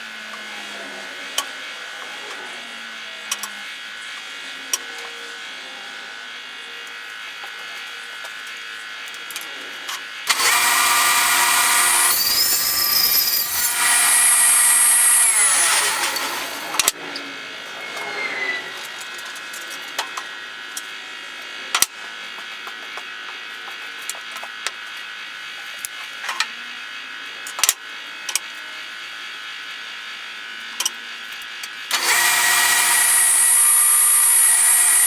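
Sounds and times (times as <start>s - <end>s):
power tool whining: 10.2s - 20.6s, 31.9s - 35.0s.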